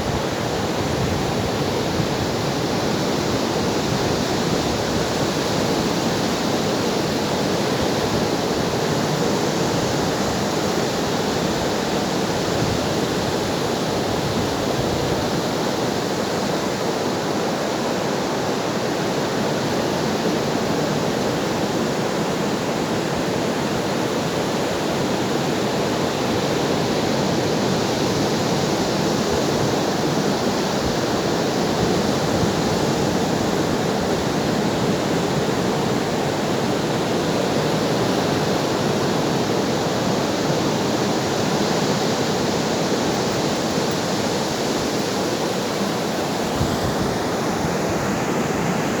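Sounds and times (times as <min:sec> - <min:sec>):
ocean surf washing on shore: 0:00.0 - 0:49.0.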